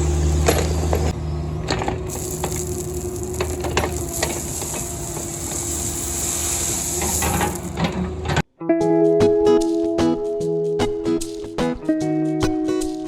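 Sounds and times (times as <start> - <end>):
diesel engine running: 0.0 - 8.4
gravel clinking and knocking: 0.4 - 8.4.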